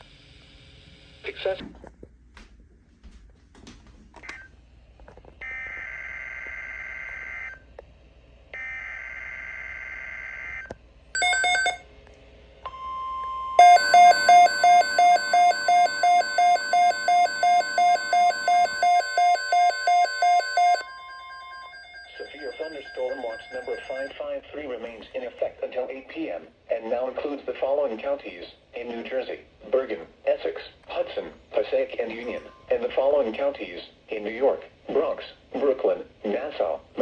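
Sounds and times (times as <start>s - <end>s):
pulsing electronic alarm beep: 12.7s - 21.8s
steady weather radio alert tone: 13.6s - 24.4s.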